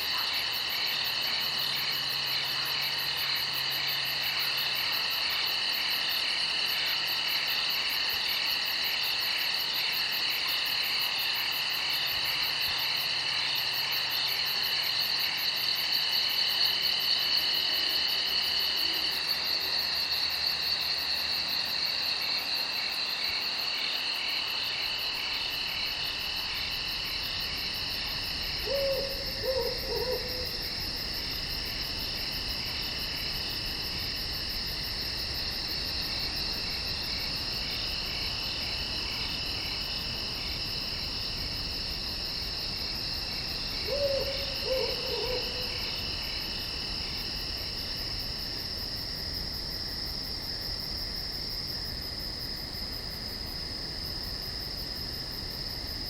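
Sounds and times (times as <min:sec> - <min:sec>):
crickets chirping: 0:00.0 - 0:56.0.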